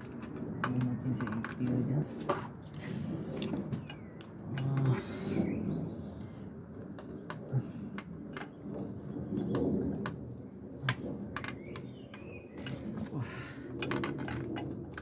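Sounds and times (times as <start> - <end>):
low cooing: 4.5 - 5.6.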